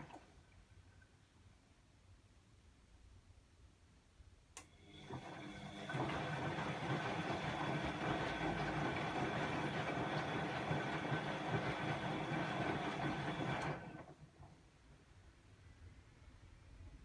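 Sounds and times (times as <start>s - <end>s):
washing machine running: 0.0s - 0.3s, 4.8s - 14.5s.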